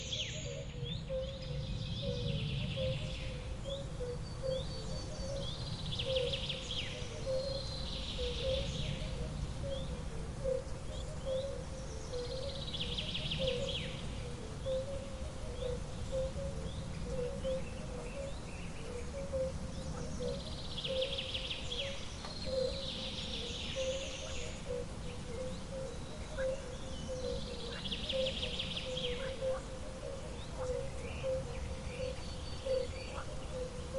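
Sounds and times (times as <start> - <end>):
birds singing: 0.0 - 33.9.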